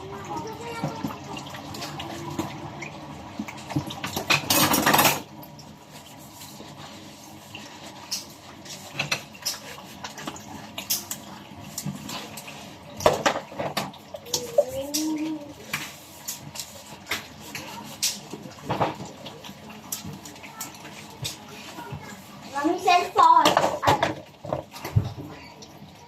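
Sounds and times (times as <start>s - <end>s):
running water gush: 0.0s - 26.0s
dishes and cutlery clinking: 4.0s - 5.3s.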